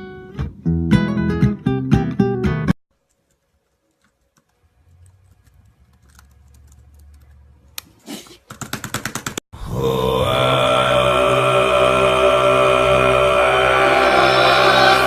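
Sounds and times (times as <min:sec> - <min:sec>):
sudden loud noise: 0:09.6 - 0:15.0.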